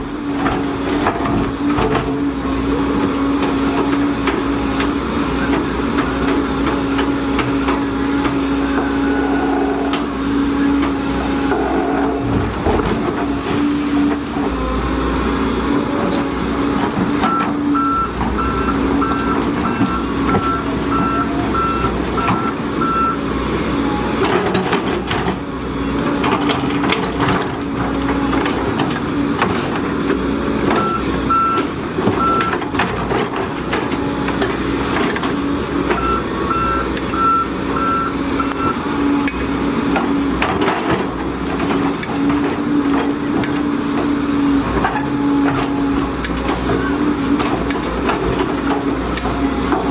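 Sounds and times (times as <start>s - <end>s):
excavator engine and hydraulics: 0.0s - 49.9s
travel alarm beeping: 17.3s - 23.2s, 36.0s - 38.8s.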